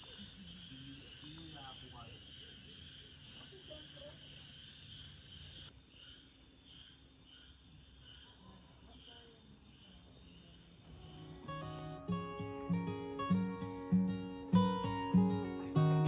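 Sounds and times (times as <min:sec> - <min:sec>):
crickets chirping: 0:00.0 - 0:16.0
acoustic guitar music: 0:10.9 - 0:16.0.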